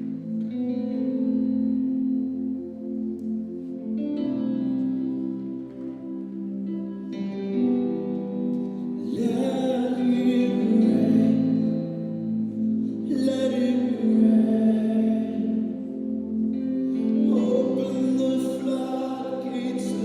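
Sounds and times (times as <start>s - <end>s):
long held chords: 0.0s - 20.0s
sung vocals: 8.6s - 20.0s.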